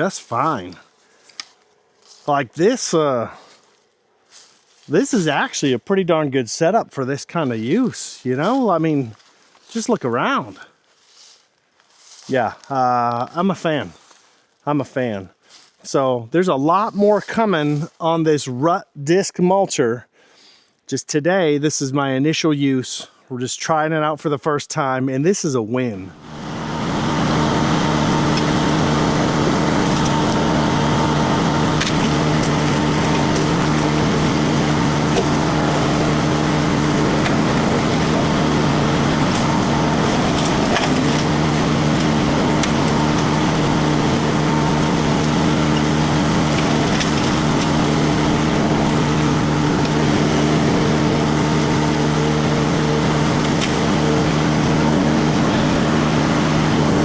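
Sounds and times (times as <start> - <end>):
diesel engine running under load: 0.0 - 0.9, 26.1 - 57.0
mulcher chewing through wood: 26.3 - 56.6
wood splintering cracks: 28.3 - 50.6, 53.4 - 54.2.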